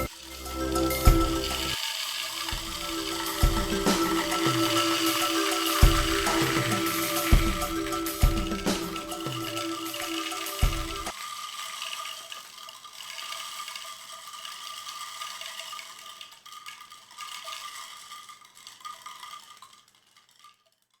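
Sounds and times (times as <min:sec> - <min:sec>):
music: 0:00.0 - 0:01.8, 0:02.5 - 0:11.1
rain stick pattering rattle: 0:00.0 - 0:21.0.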